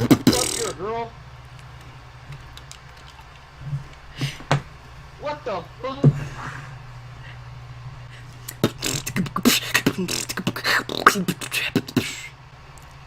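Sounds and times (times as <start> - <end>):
beatboxing: 0.0 - 0.8, 8.4 - 12.4.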